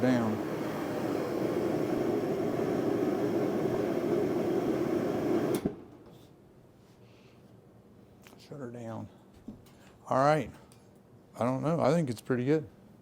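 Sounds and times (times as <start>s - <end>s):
propane heater rushing: 0.0s - 6.0s
heater switch click: 5.4s - 5.8s.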